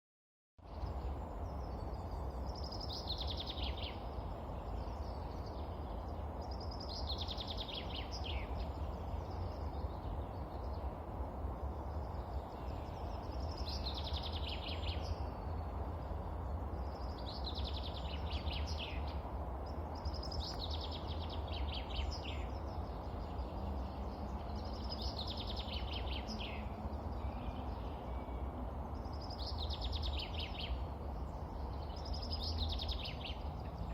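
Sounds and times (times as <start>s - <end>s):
songbird singing: 0.6s - 33.9s.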